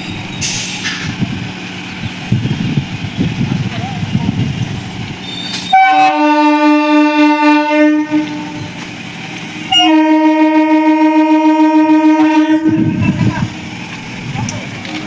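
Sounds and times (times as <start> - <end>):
train horn blasts: 5.2 - 8.8, 9.7 - 13.5.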